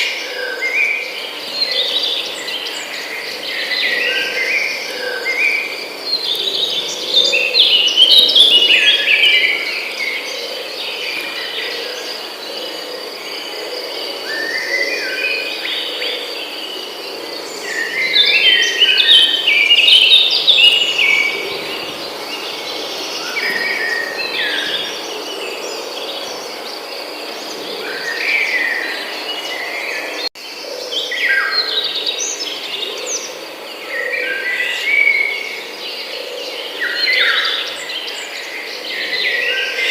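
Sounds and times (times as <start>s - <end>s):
high insect drone: 0.0s - 39.9s
songbirds chirping: 0.0s - 39.9s.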